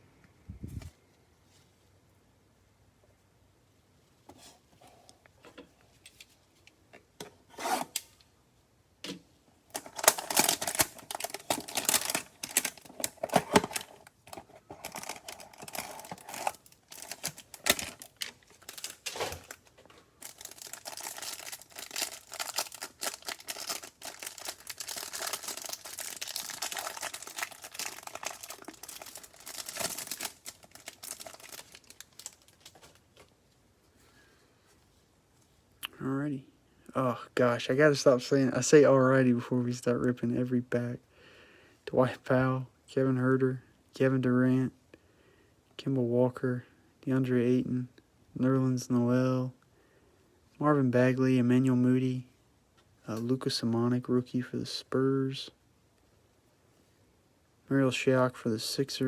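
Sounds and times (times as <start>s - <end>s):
packaging tearing and crinkling: 9.8s - 33.0s.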